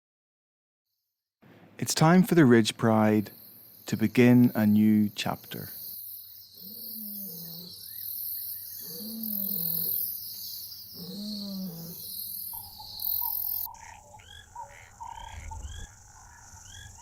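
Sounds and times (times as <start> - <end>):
insects hissing: 2.0 - 17.0
lion moaning: 6.6 - 7.9, 8.8 - 10.2, 10.9 - 12.2.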